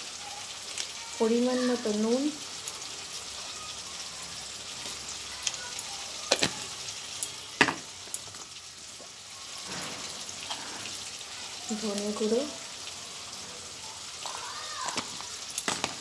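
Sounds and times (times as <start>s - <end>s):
spices sizzling in oil: 0.0s - 16.0s.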